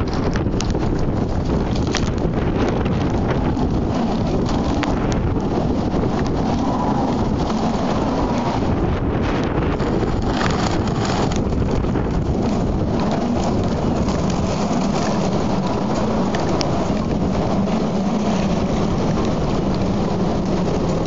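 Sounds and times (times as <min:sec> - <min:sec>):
rain: 0:00.0 - 0:21.0
strong wind rumbling on microphone: 0:00.0 - 0:21.0.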